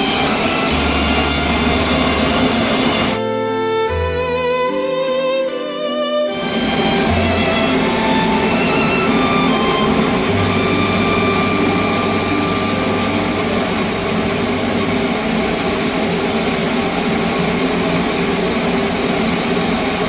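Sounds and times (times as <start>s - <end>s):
machinery rushing noise: 0.0s - 3.2s, 6.4s - 20.0s
low hum: 6.4s - 20.0s.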